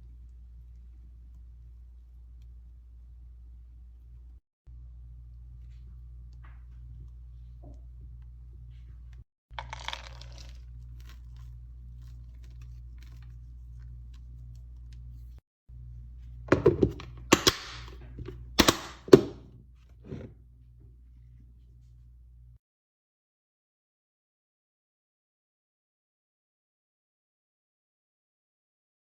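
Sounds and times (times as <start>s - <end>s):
steady low hum: 0.0s - 22.6s.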